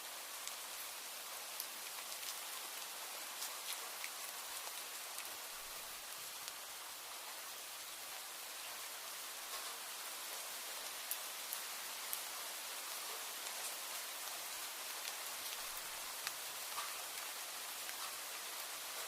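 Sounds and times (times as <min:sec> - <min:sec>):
rain falling: 0:00.0 - 0:19.0
sharp drip ticks: 0:15.0 - 0:18.2.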